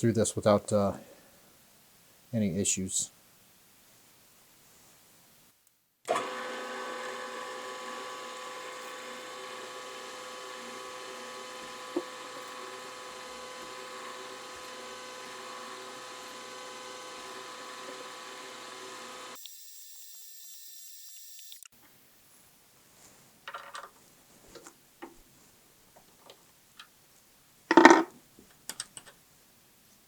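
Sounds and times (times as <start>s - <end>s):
machine spindle whine drilling steel: 6.1s - 21.6s.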